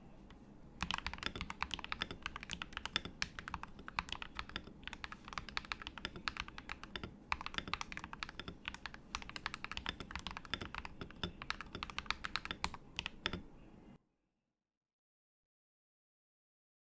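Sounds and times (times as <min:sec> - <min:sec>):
fast typing on mechanical keyboard: 0:00.8 - 0:13.5.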